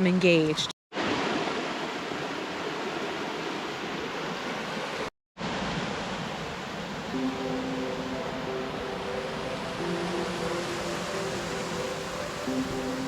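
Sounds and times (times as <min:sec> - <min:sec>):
waterfall rushing: 0:05.4 - 0:13.0.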